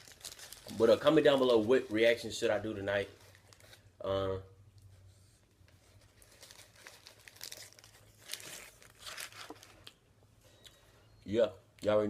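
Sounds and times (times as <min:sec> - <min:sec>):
food packaging crinkling: 0:00.0 - 0:03.9, 0:05.8 - 0:10.0.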